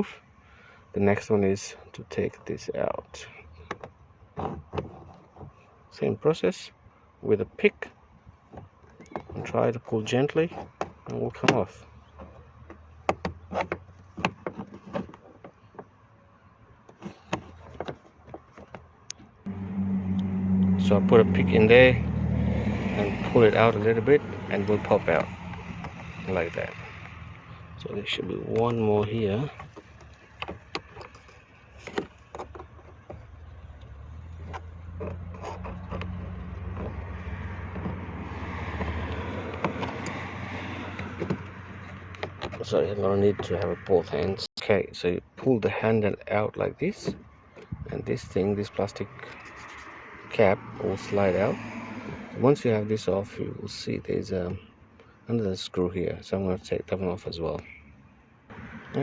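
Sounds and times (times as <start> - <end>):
vehicle hum: 15.9 - 44.6, 46.3 - 56.1, 56.7 - 59.0.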